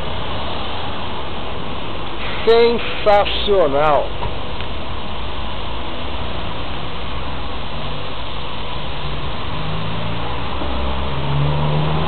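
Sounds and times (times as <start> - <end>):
rain: 0.0 - 12.0.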